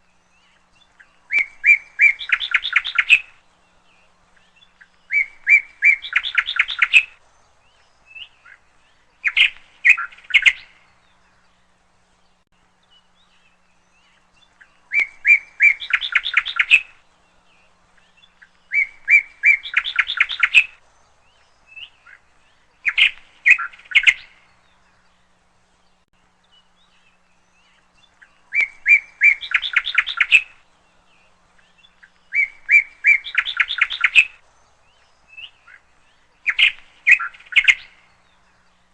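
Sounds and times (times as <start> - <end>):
small bird chirping and trilling: 0.1 - 11.6, 12.8 - 38.9.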